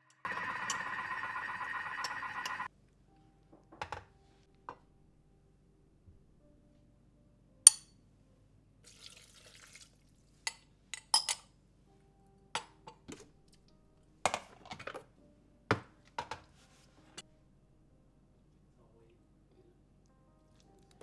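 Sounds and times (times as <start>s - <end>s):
dishes and utensils clinking: 10.5s - 11.5s.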